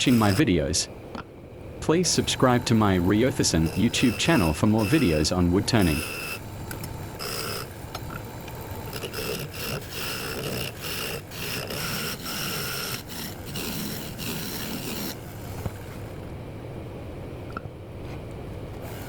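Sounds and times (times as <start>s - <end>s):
turning tool scraping wood: 0.0s - 0.5s, 2.0s - 16.2s
wood lathe whine: 0.0s - 0.5s, 1.9s - 16.2s.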